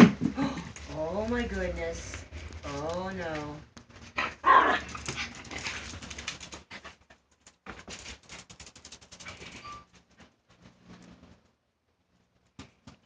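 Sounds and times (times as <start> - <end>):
puppy scratching at container: 7.7 - 9.6.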